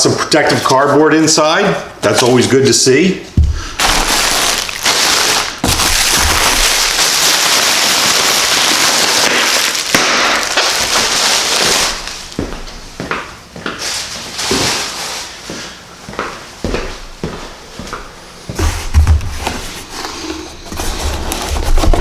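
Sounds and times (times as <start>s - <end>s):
cardboard rustling and scraping: 18.5s - 22.0s.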